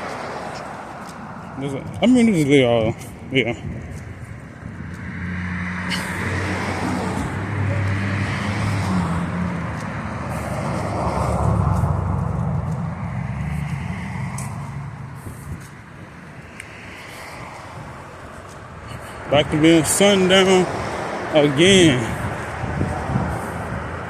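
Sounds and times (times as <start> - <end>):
vehicle driving past: 5.0 - 15.5.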